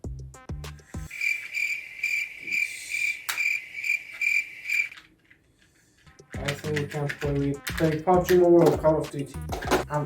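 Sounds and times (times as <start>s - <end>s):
cricket chirping: 1.1s - 5.0s.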